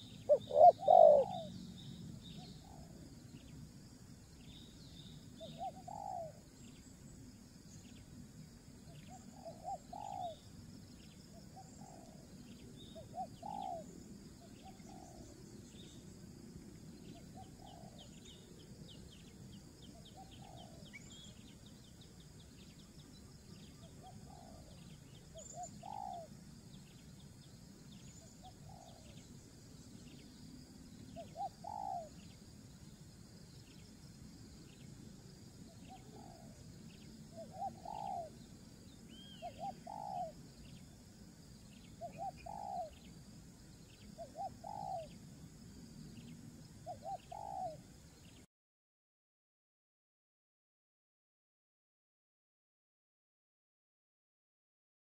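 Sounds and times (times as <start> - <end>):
bird calling with rising notes: 0.0 - 1.8.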